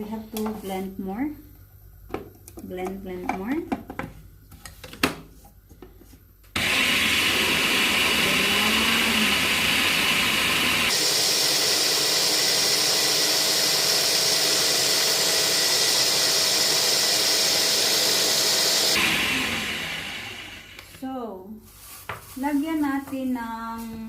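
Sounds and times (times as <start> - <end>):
kitchen blender running: 6.6 - 21.0.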